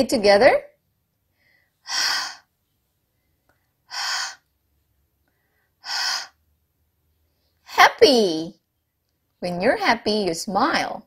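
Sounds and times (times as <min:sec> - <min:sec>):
woman breathing out h sound: 0:01.4 - 0:02.5, 0:03.9 - 0:04.4, 0:05.3 - 0:06.4.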